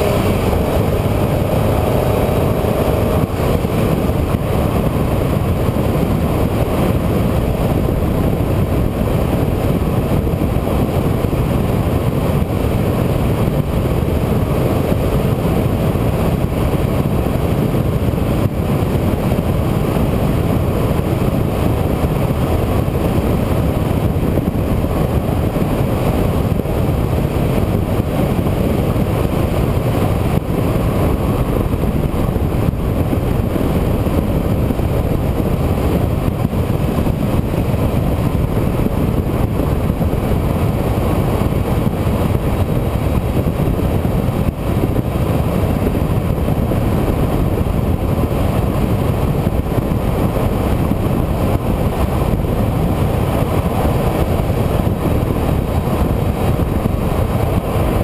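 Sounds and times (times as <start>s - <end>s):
vehicle engine and road noise: 0.0s - 58.0s.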